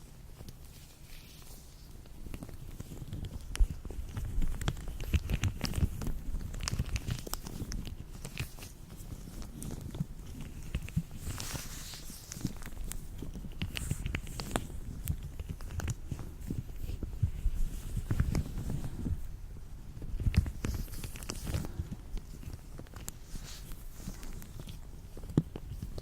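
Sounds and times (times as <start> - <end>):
latex gloves rubbing and crinkling: 0.0 - 26.0
latex clicks and snaps: 2.2 - 19.0.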